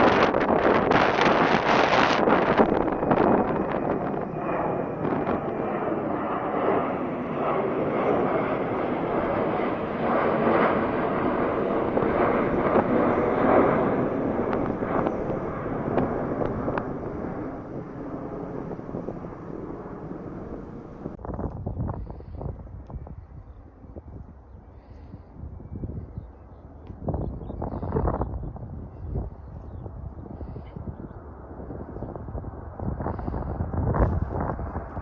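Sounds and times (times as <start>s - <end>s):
jet airliner taking off: 0.0s - 21.2s.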